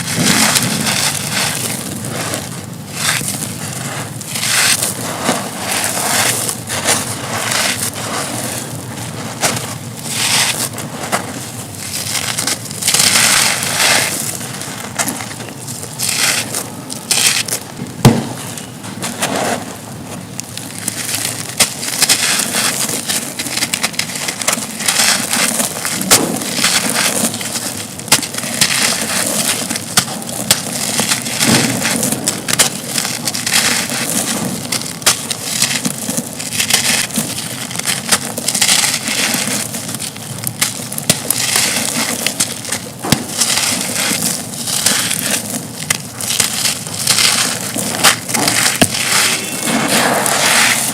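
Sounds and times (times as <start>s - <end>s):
concrete chunks crumbling: 0.0s - 50.9s
sharp loud crack: 17.9s - 18.6s, 26.0s - 26.5s.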